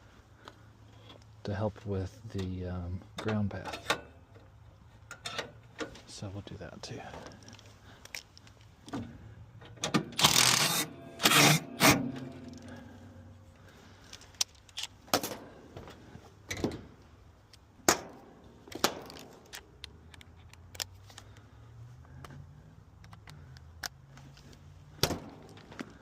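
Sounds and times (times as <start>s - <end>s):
metal tools clinking: 10.2s - 13.3s.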